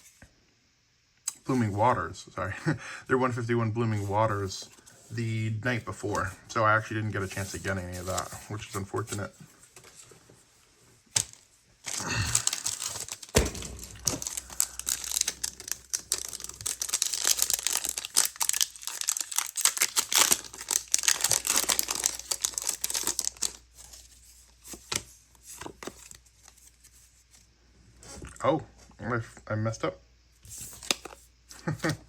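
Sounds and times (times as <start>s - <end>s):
foil wrapper tearing and crinkling: 11.1s - 24.2s.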